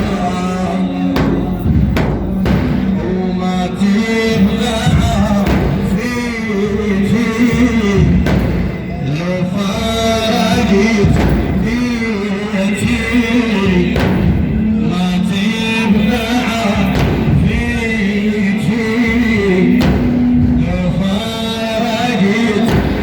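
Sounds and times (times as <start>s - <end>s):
deep regular beat: 0.0s - 21.6s, 22.5s - 23.0s
man singing religious chant: 0.0s - 23.0s.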